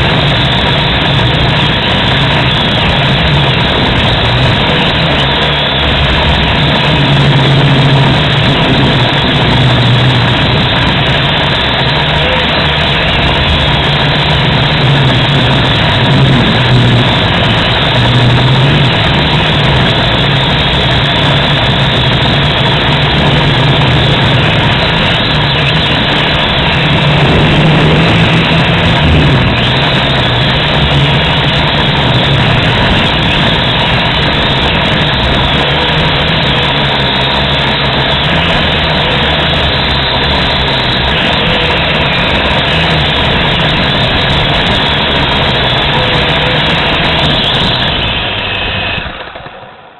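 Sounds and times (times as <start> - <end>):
quadcopter motors buzzing: 0.0 - 49.4
heavy noise wash: 0.0 - 49.9.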